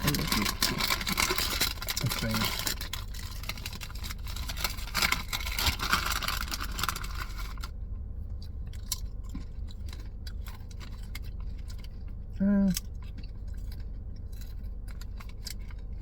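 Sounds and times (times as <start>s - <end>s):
crunchy snack chewing: 0.0s - 7.6s, 8.4s - 16.0s
plastic bag crackling: 0.0s - 7.7s
steady low hum: 0.0s - 16.0s.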